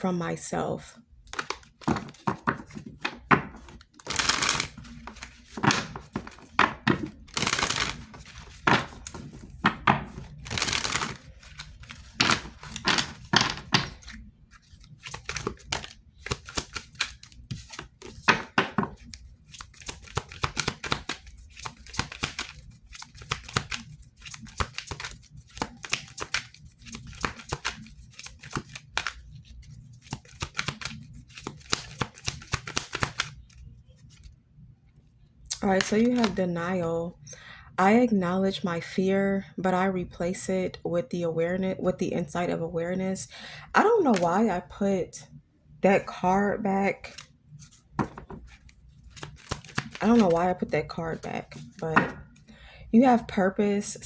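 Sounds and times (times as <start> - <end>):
cards riffle shuffling: 1.3 - 29.2, 30.0 - 34.3, 35.7 - 36.4, 47.1 - 50.4
cards clicking and slapping: 1.3 - 29.3, 30.0 - 33.6, 35.6 - 36.4, 48.0 - 50.4.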